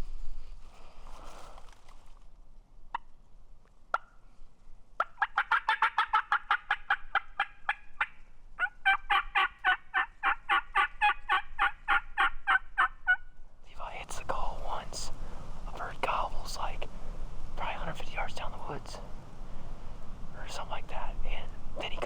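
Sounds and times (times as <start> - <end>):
turkey calling: 5.0 - 13.4.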